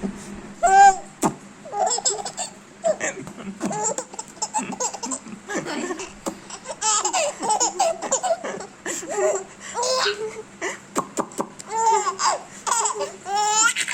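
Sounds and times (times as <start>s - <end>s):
baby giggling: 1.7s - 10.4s, 11.7s - 13.9s.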